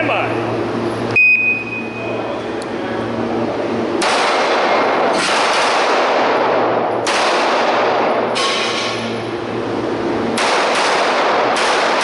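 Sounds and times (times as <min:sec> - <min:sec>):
pistol shots: 0:04.0 - 0:08.1, 0:10.4 - 0:12.0.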